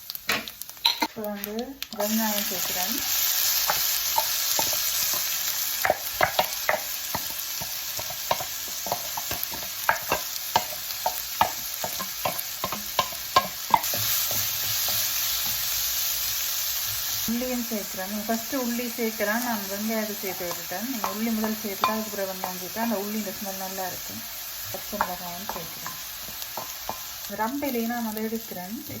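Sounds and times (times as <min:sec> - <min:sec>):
onions sizzling in hot oil: 0:00.0 - 0:29.0
spoon scraping a pan: 0:02.3 - 0:15.8.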